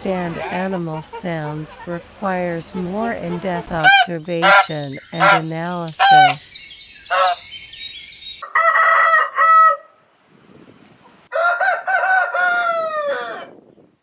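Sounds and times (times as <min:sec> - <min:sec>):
rooster crowing: 0:07.1 - 0:07.4, 0:08.4 - 0:10.0, 0:11.3 - 0:13.6.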